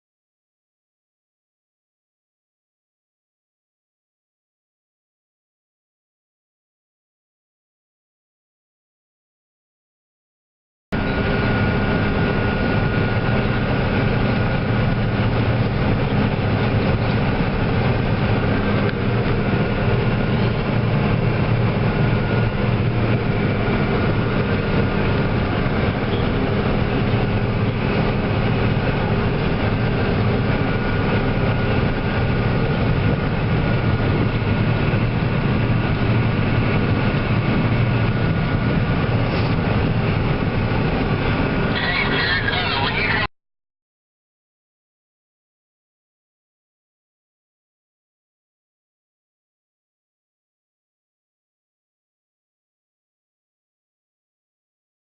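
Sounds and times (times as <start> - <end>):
harvest machinery engine drone: 11.0 - 43.3
steady machine whine: 11.0 - 43.3.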